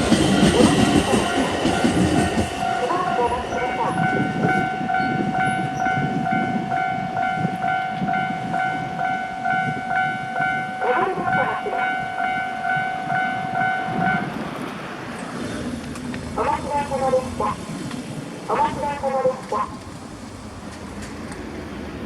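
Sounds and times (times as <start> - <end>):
level-crossing warning bell ringing: 0.0 - 14.5, 16.4 - 17.8, 18.5 - 19.8
train rumbling past: 0.0 - 22.0.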